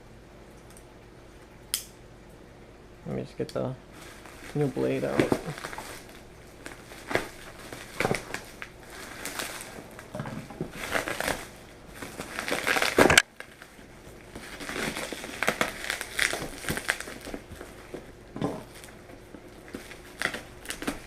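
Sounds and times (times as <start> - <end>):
packaging crinkling and crunching: 3.9 - 21.0.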